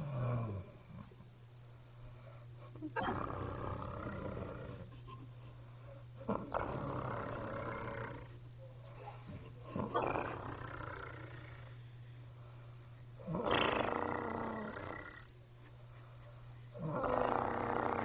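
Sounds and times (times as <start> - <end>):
woman snoring: 3.0 - 4.9, 6.3 - 8.3, 13.2 - 15.3, 16.8 - 18.0.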